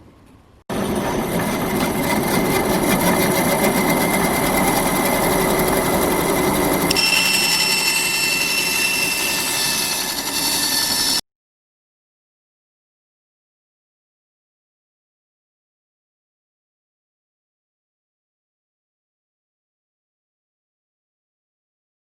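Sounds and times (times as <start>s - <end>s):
electric power tool running: 0.7s - 11.2s.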